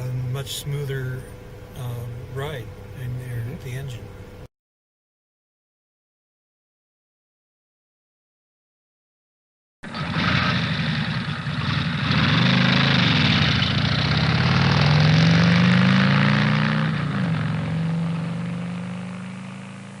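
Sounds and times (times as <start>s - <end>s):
vehicle engine revving: 9.8s - 20.0s.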